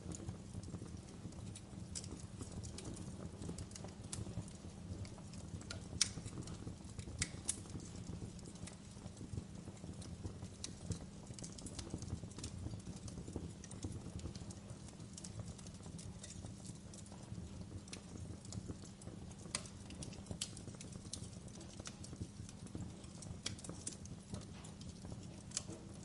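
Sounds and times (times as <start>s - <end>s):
campfire crackling: 0.0s - 26.0s.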